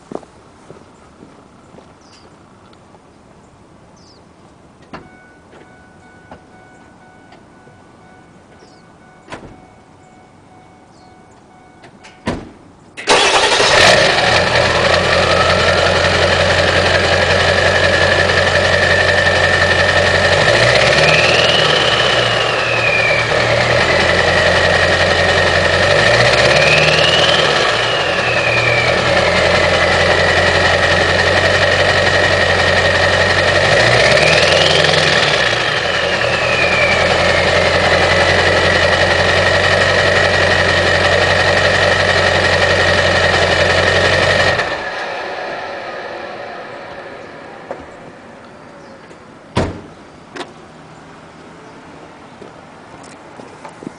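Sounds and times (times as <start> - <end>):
diesel engine starting and idling: 4.8 - 51.7
engine revving: 13.0 - 49.1.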